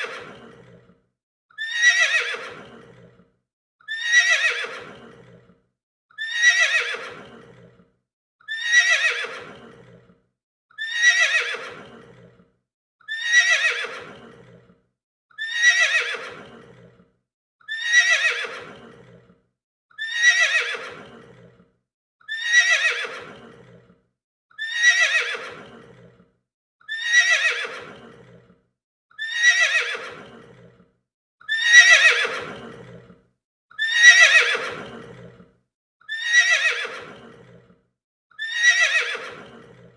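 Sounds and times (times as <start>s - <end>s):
horse whinnying: 1.6s - 3.2s, 3.9s - 5.5s, 6.2s - 7.8s, 8.5s - 10.1s, 10.8s - 12.4s, 13.1s - 14.6s, 15.4s - 17.0s, 17.7s - 19.3s, 20.0s - 21.5s, 22.3s - 23.8s, 24.6s - 26.2s, 26.9s - 28.5s, 29.2s - 30.8s, 31.5s - 33.0s, 33.8s - 35.4s, 36.1s - 37.6s, 38.4s - 39.9s.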